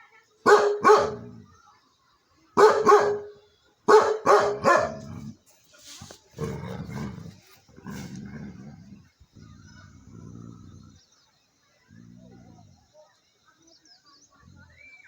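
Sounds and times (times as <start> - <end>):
dog barking: 0.4 - 1.3, 2.6 - 5.1.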